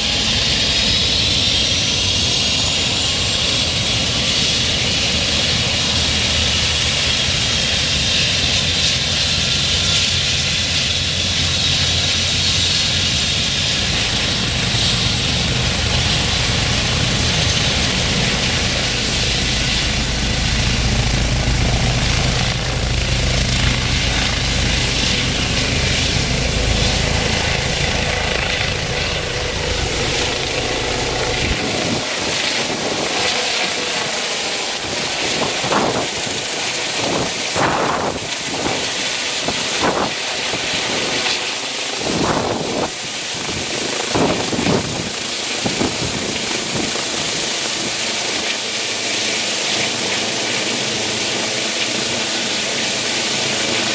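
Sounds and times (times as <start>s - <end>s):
helicopter turbine whine: 0.0s - 53.9s
rotor rushing noise: 9.3s - 36.5s
deep rumble: 11.5s - 32.1s.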